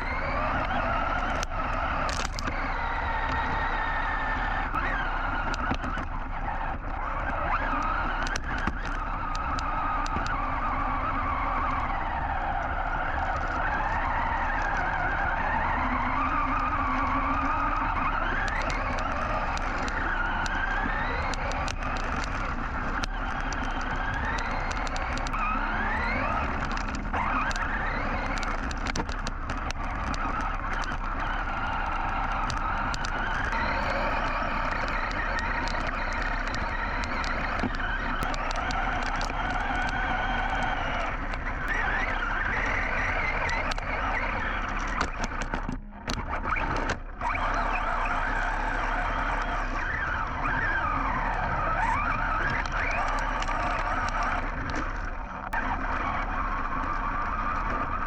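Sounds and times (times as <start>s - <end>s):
rc truck motor whine: 0.0s - 58.0s
tyres crunching on gravel: 0.0s - 58.0s.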